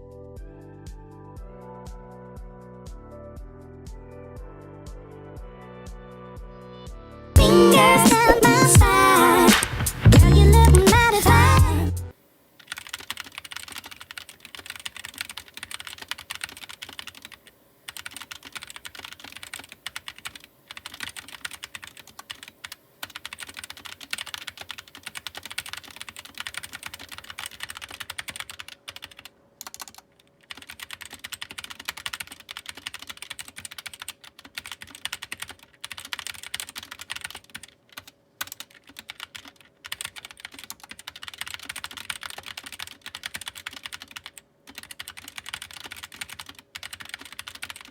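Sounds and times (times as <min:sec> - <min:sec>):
mechanical keyboard typing: 0:12.6 - 0:47.9.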